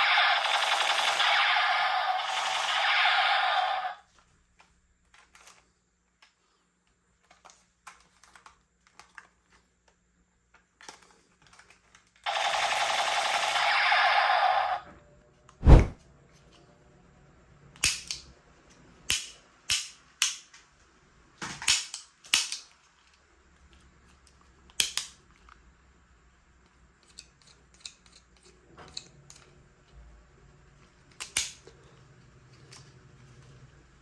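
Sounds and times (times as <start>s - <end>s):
toy gun being cocked clicks: 0.0s - 4.0s, 12.3s - 14.8s, 17.8s - 18.3s, 19.1s - 20.5s, 21.6s - 22.7s, 24.8s - 25.2s, 31.2s - 31.6s
toy spring gun snaps: 17.8s - 18.3s, 19.1s - 20.5s, 21.6s - 22.7s, 24.7s - 25.2s, 31.2s - 31.6s.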